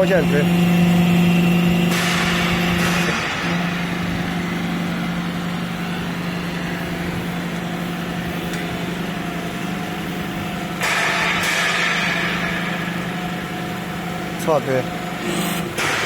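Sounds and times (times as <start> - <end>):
hydraulic motor humming: 0.0 - 16.0.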